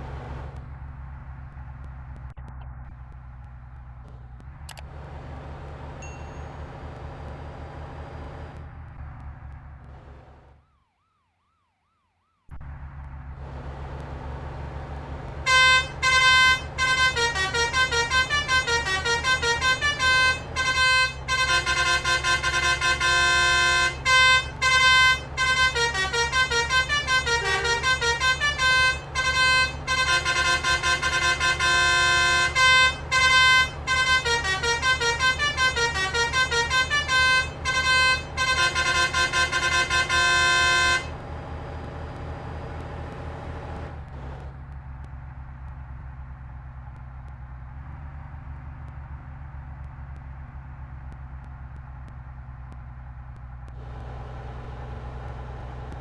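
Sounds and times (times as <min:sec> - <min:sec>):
bus engine running: 0:00.0 - 0:10.6, 0:12.5 - 0:56.0
multi-tone bus horn tune: 0:15.1 - 0:41.2.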